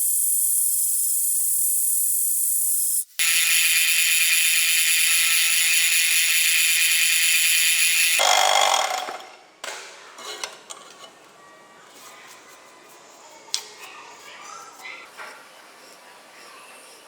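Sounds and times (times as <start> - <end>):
power tool whining on steel: 0.0 - 9.1.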